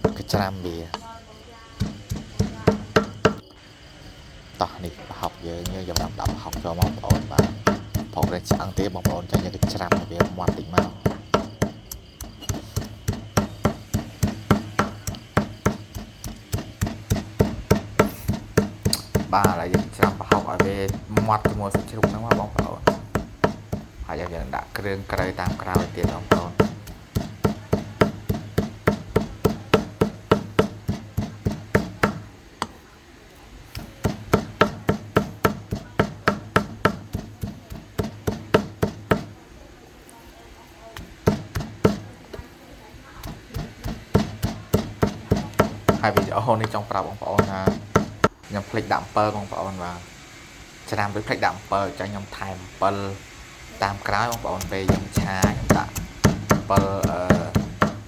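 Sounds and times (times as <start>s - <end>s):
knife chopping on cutting board: 0.0s - 0.4s, 1.8s - 3.4s, 5.6s - 32.8s, 33.7s - 39.4s, 41.0s - 42.5s, 43.2s - 48.4s, 54.0s - 58.0s.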